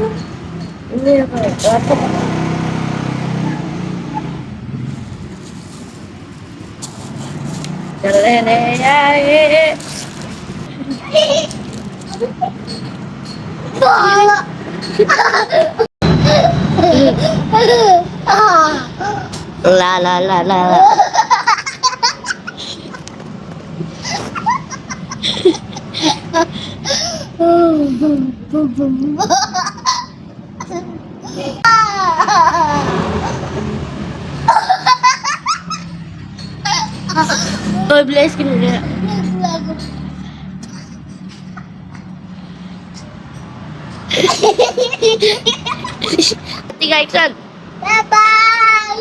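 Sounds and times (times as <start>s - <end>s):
vehicle engine humming: 0.0s - 49.0s
children laughing and giggling: 10.3s - 19.6s, 20.5s - 33.7s, 34.3s - 37.9s, 38.6s - 46.8s.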